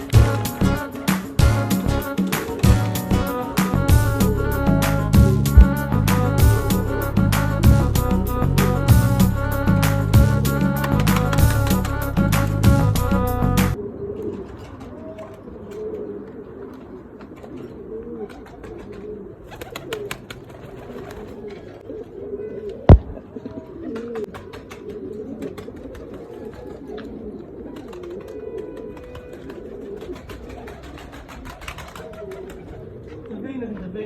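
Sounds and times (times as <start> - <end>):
music: 0.0 - 13.8
pigeons cooing: 0.0 - 33.4
sharp loud knock: 22.9 - 23.2.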